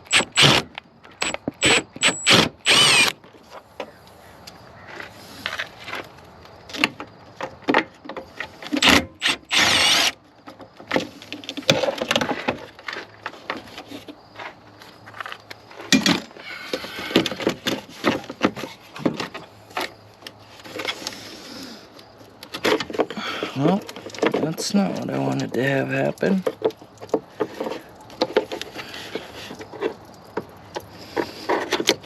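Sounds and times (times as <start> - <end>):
loud burst of noise: 0.0 - 3.2, 8.8 - 10.1.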